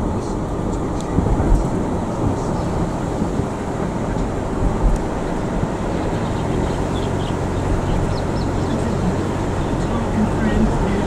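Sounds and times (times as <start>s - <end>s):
car road rumble: 0.0s - 11.0s.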